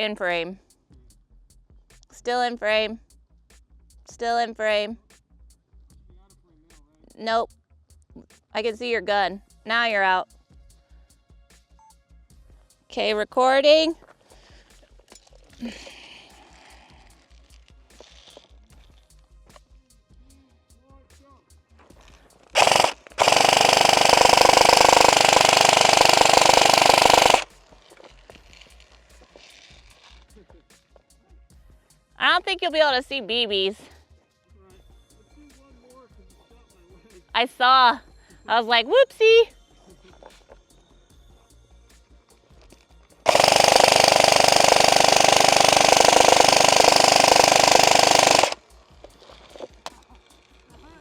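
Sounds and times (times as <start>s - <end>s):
airsoft gun full auto bursts: 22.6s - 27.6s, 43.3s - 48.6s.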